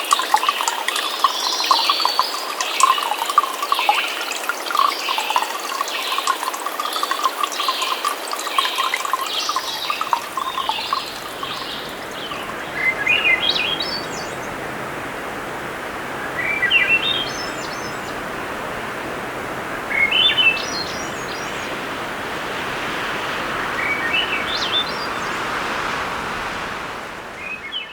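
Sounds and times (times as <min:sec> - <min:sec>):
trickling water: 0:00.0 - 0:27.9
background hiss: 0:09.3 - 0:27.9
songbird rising notes: 0:09.6 - 0:27.9
forest birds calling: 0:16.0 - 0:27.9.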